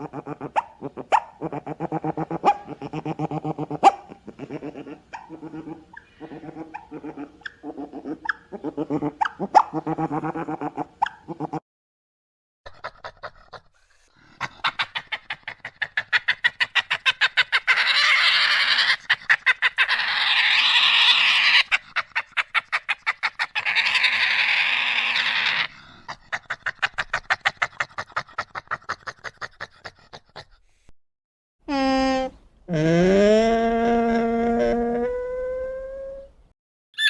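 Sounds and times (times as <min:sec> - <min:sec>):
fast rattling animal calls: 0:15.7 - 0:25.8.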